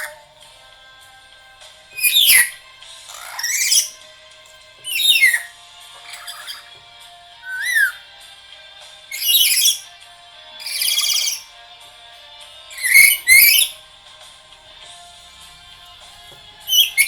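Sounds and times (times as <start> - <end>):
parrot giving harsh calls: 0.0 - 0.2, 2.0 - 4.0, 4.8 - 6.7, 7.4 - 8.0, 9.1 - 9.9, 10.6 - 11.5, 12.7 - 13.8, 16.7 - 17.0.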